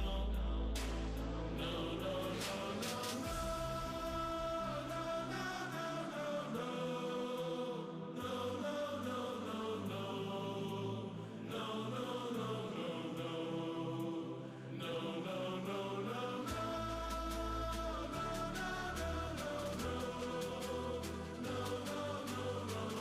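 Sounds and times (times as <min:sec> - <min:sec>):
low bass: 0:00.0 - 0:06.6, 0:16.5 - 0:23.0
layered held vocal chords: 0:00.0 - 0:23.0.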